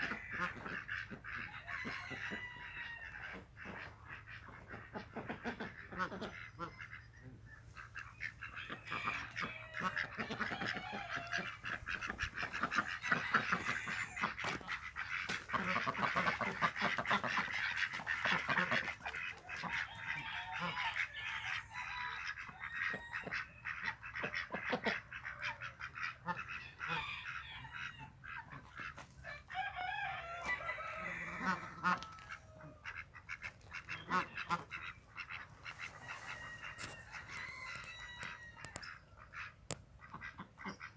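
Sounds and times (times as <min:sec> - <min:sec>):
flock of birds calling: 0:00.0 - 0:40.9.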